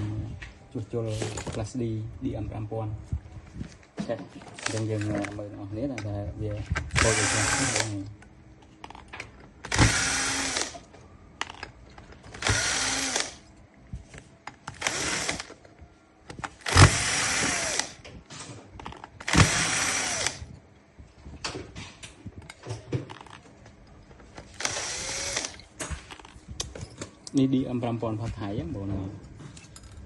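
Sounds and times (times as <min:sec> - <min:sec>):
power drill spinning: 0:04.6 - 0:05.3, 0:07.0 - 0:08.0, 0:09.6 - 0:10.9, 0:12.3 - 0:13.4, 0:14.7 - 0:15.5, 0:16.6 - 0:18.0, 0:19.2 - 0:20.6, 0:24.4 - 0:26.2.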